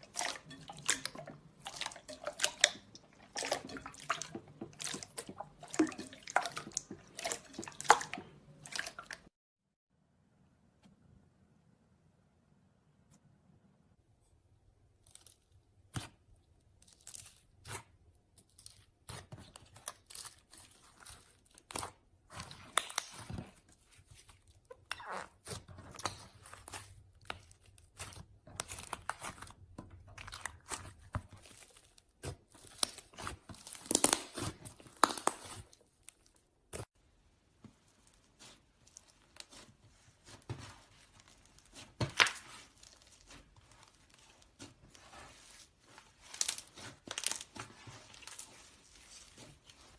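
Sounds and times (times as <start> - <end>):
slime crackling and popping: 25.4 - 36.9, 38.0 - 49.5.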